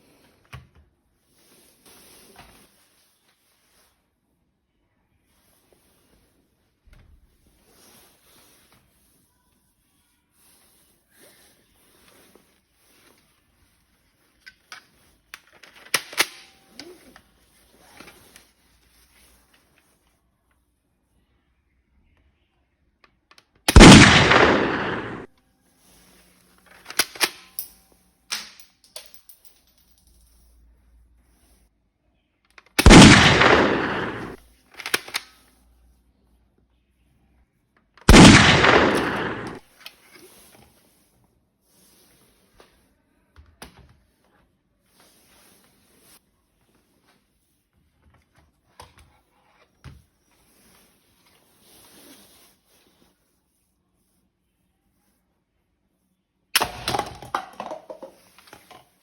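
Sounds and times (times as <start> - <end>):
toy gun shots: 23.7 - 25.3, 32.8 - 35.3, 38.1 - 39.6.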